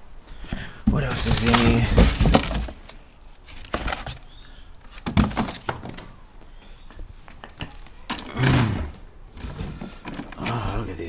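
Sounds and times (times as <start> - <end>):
parts and packaging handled: 0.8 - 10.6
loud thunk: 8.4 - 9.8.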